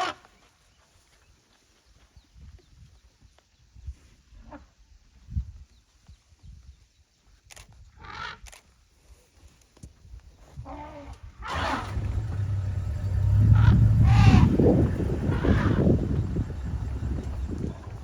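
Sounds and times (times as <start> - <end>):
vehicle engine humming: 11.6 - 18.0.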